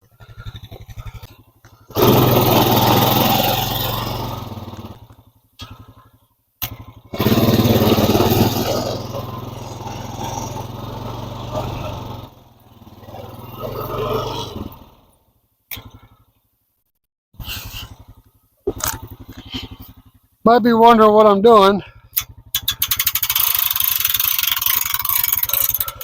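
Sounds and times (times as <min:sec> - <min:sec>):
gasoline engine revving: 0:00.2 - 0:05.9, 0:06.6 - 0:16.1, 0:17.4 - 0:26.0.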